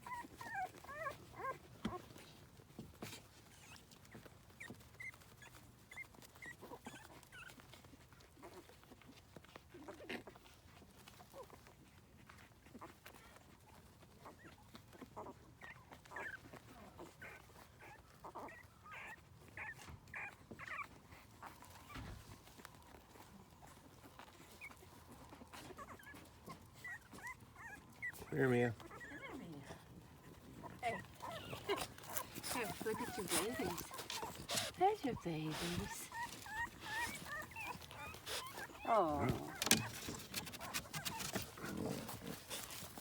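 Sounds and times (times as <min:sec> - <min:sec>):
puppies whimpering: 0:00.0 - 0:02.6, 0:12.7 - 0:43.0.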